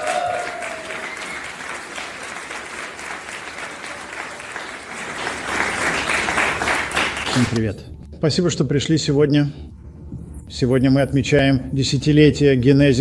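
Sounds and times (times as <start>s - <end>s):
audience applauding: 0.0s - 7.7s.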